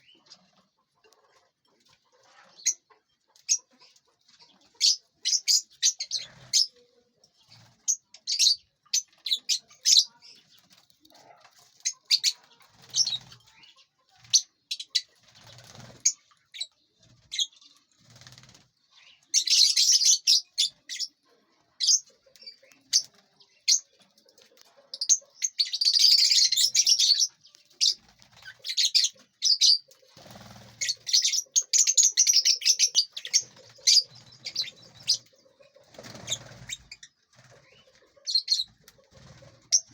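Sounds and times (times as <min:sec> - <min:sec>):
lovebirds chirping: 0:00.0 - 0:39.9
wings fluttering: 0:06.1 - 0:06.7, 0:10.3 - 0:16.4, 0:17.0 - 0:18.9, 0:26.2 - 0:31.8, 0:32.6 - 0:39.9.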